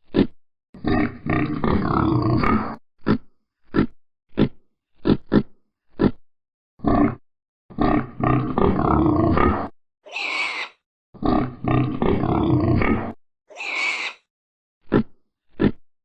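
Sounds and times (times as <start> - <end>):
pig grunting: 0.1 - 6.2, 6.8 - 15.8
high breathy pig call: 10.1 - 10.8, 13.5 - 14.3.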